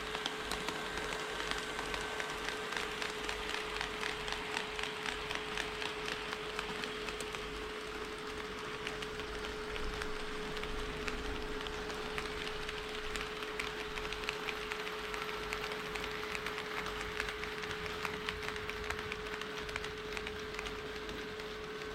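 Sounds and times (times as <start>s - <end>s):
model train motor hum: 0.0s - 21.9s.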